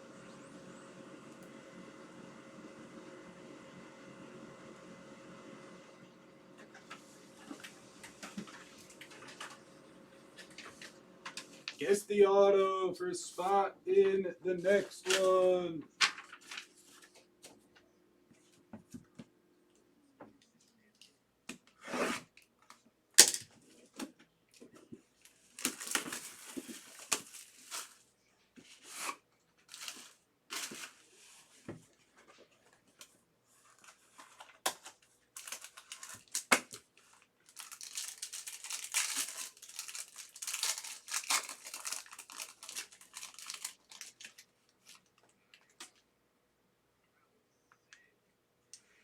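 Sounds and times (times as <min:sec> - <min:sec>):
packaging tearing and crinkling: 0:25.6 - 0:28.0, 0:28.9 - 0:31.0, 0:34.3 - 0:45.9.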